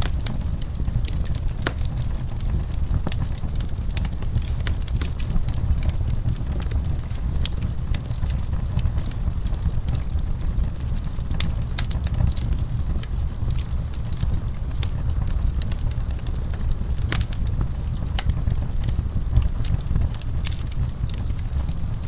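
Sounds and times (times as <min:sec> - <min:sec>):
low rumble of flames: 0:00.0 - 0:22.0
wood fire crackling: 0:00.0 - 0:22.0.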